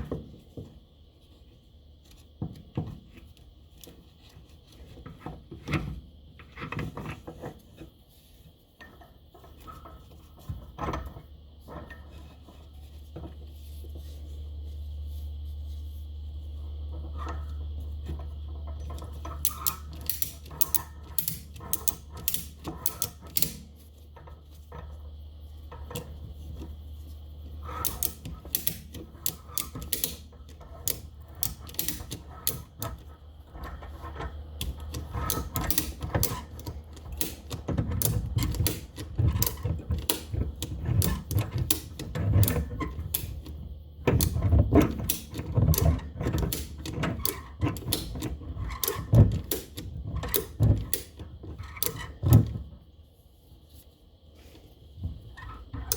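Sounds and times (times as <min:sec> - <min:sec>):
ratchet clicking: 0:19.4 - 0:23.8, 0:27.7 - 0:33.1, 0:34.6 - 0:43.5.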